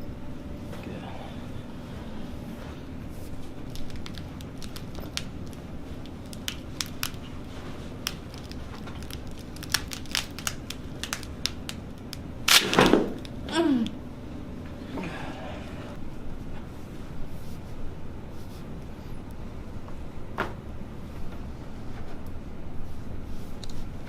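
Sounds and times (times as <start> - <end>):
scattered clicks and crackles: 3.6 - 13.3.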